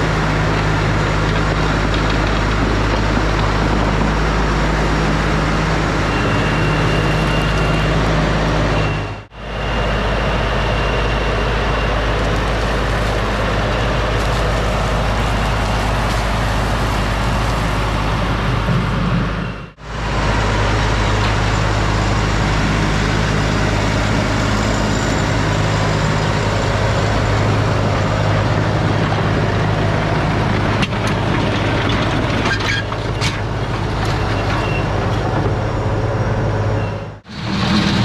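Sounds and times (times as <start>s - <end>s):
tractor diesel engine running: 0.0s - 38.0s.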